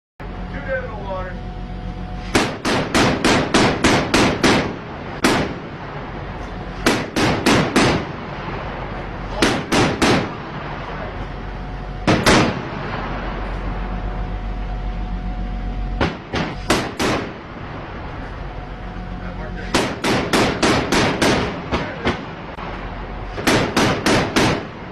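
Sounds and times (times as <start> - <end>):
single gunshots: 2.2 - 5.6, 6.8 - 8.2, 9.3 - 10.4, 12.1 - 12.7, 16.0 - 17.3, 19.7 - 22.2, 23.4 - 24.7
gunfire in rapid bursts: 2.3 - 5.6, 6.8 - 8.2, 9.3 - 10.4, 16.0 - 17.4, 19.7 - 22.1, 23.4 - 24.8.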